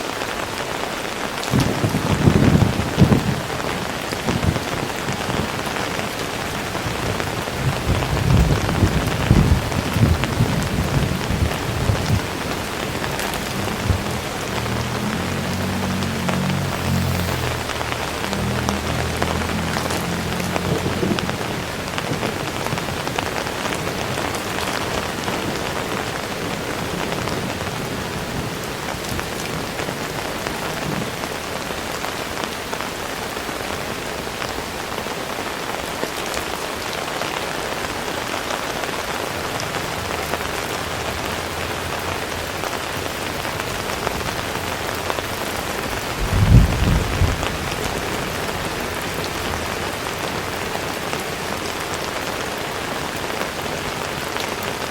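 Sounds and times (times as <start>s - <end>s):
heavy rain falling: 0.0s - 54.9s
low rumble: 9.3s - 22.4s.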